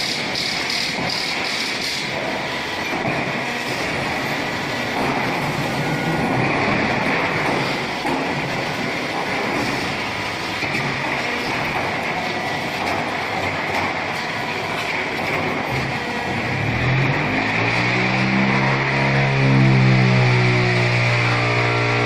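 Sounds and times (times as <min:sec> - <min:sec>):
high machine squeal: 0:00.0 - 0:02.7, 0:03.4 - 0:06.7
block making machine din: 0:00.0 - 0:22.0.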